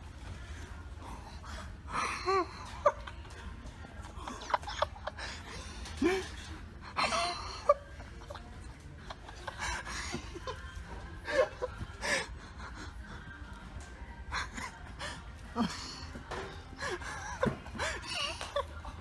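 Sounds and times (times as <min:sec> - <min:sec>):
hard breathing: 0:00.4 - 0:02.5, 0:11.2 - 0:18.4
stifled snickering: 0:01.4 - 0:13.4, 0:14.2 - 0:19.0.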